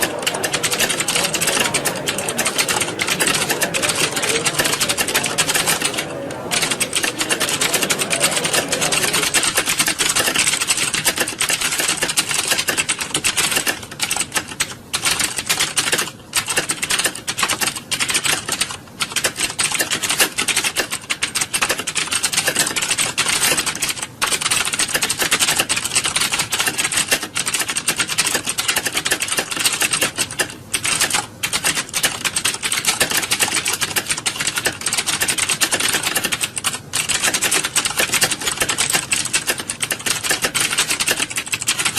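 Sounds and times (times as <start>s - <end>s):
many keyboards clattering: 0.0s - 10.3s, 28.3s - 41.9s.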